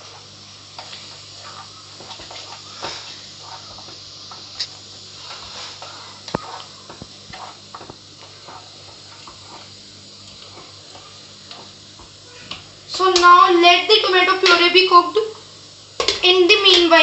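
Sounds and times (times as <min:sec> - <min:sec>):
frying hiss: 0:00.0 - 0:17.0.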